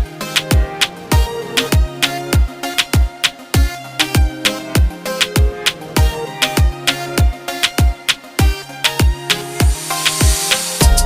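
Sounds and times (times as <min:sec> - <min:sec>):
afrobeat dance music: 0:00.0 - 0:11.0.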